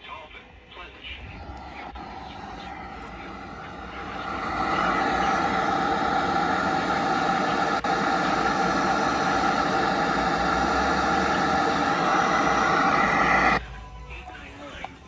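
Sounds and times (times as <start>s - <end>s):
heavy static: 1.1s - 13.6s.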